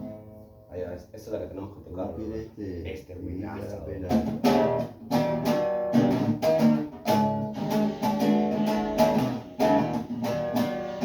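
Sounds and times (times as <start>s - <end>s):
acoustic guitar strumming: 0.0s - 0.7s, 4.1s - 11.0s.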